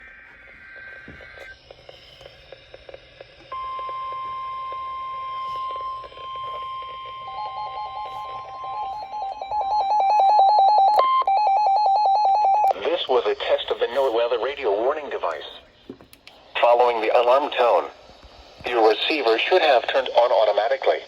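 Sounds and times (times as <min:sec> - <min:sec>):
steady alarm tone: 0:00.0 - 0:15.8.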